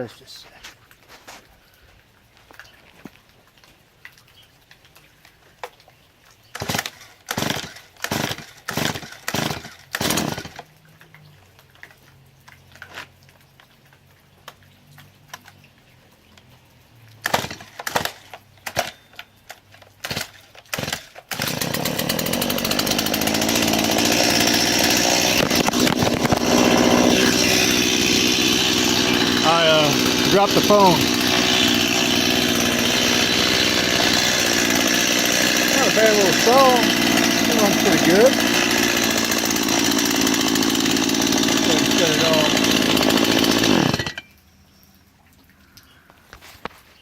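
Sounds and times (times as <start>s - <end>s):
chainsaw recoil starter pulls: 6.5s - 10.7s, 17.2s - 44.3s
chainsaw engine running loudly: 7.4s - 10.6s, 20.8s - 44.2s.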